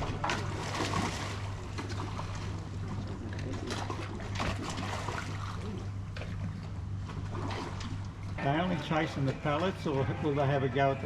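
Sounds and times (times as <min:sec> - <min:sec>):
fish splashing in water: 0:00.0 - 0:08.4
steady low hum: 0:00.0 - 0:11.0.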